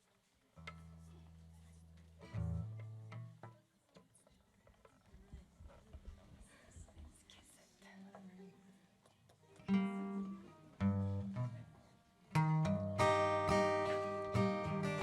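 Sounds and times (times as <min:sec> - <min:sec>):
acoustic guitar strumming: 0:12.3 - 0:15.0.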